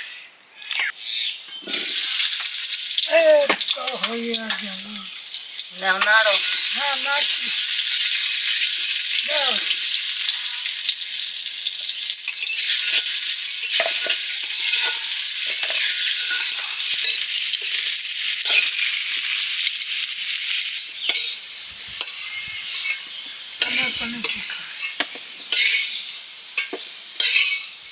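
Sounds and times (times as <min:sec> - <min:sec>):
spoon scraping pan: 0:01.6 - 0:19.0, 0:20.2 - 0:27.8
food frying in hot oil: 0:01.6 - 0:27.9.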